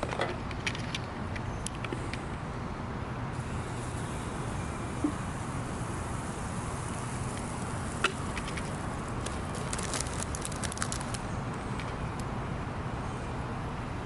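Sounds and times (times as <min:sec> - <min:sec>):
steady outdoor hiss: 0:00.0 - 0:14.0
campfire crackling and popping: 0:07.3 - 0:11.2.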